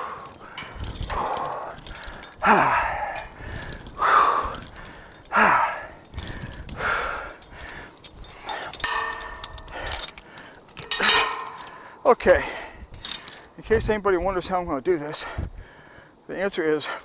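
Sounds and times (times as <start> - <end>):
man breathing hard: 0.0 - 13.5, 15.2 - 16.2
short metallic clink: 8.8 - 10.0.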